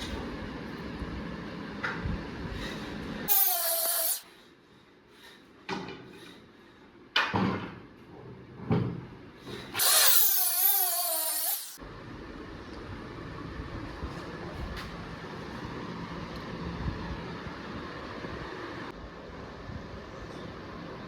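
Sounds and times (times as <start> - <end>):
electric drill whining: 3.3 - 4.2, 9.8 - 11.8.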